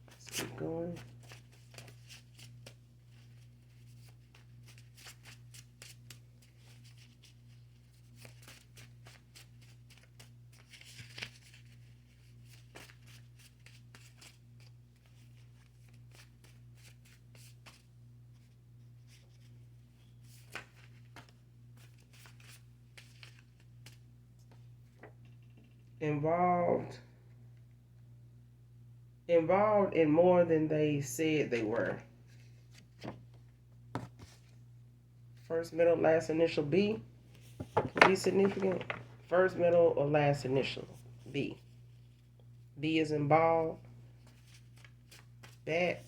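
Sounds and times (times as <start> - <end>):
tarot cards being shuffled: 37.3 - 39.7.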